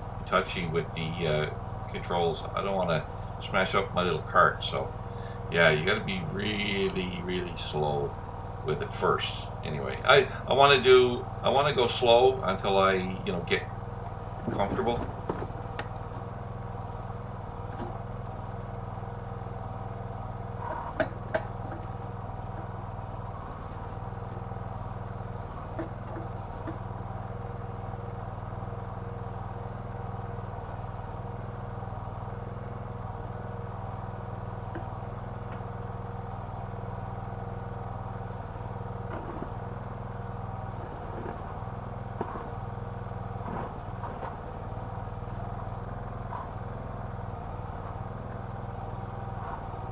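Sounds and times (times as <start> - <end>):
small gas engine running: 0.0 - 49.9
sharp knocks: 14.4 - 16.2.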